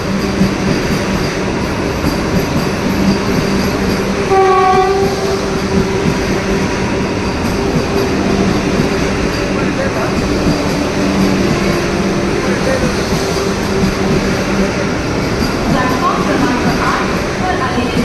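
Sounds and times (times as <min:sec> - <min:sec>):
train wheels rumbling on rails: 0:00.0 - 0:18.0
short train horn blast: 0:04.3 - 0:05.5.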